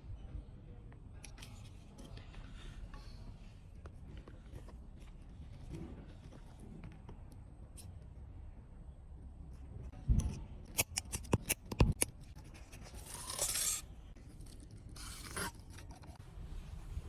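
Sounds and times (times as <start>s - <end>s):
scraping cutting sounds: 10.7s - 16.2s.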